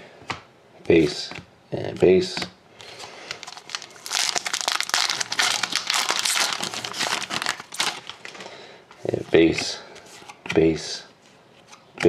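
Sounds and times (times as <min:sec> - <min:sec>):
foil wrapper crinkling: 0:02.9 - 0:08.5.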